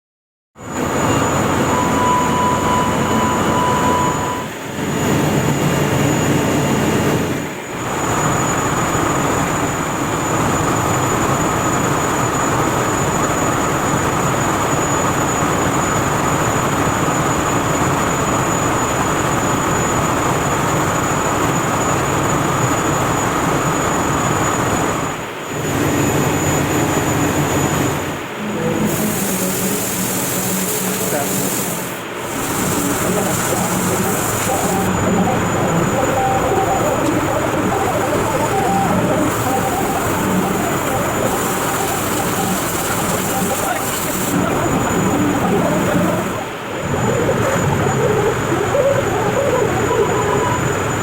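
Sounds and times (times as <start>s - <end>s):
pulsing alarm tone: 0.6s - 51.0s
boiler plant roar: 25.6s - 51.0s.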